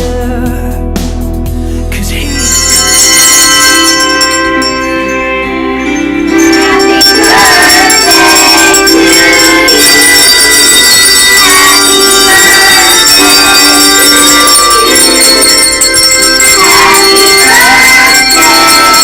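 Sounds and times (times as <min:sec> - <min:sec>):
handbell choir ringing chords: 0:02.1 - 0:19.0.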